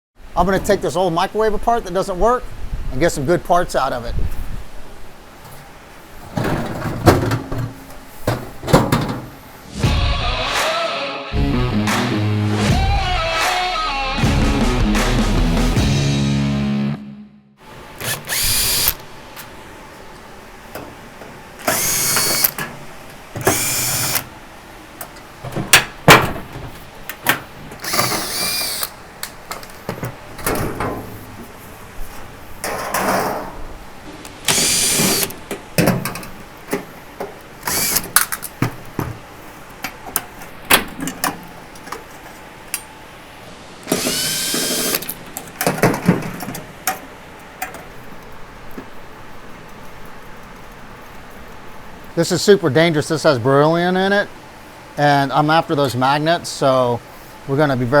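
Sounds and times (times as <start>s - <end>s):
power drill whining: 18.0s - 19.0s, 21.6s - 22.6s, 23.4s - 24.2s, 27.8s - 28.9s, 34.4s - 35.3s, 37.7s - 38.1s, 43.9s - 45.2s.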